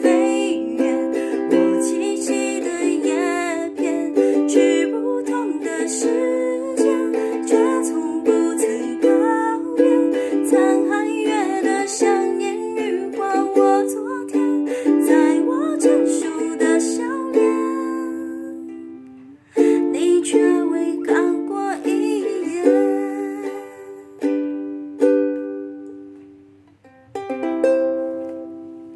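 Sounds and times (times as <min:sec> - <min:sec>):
ukulele strumming chords: 0:00.0 - 0:28.9.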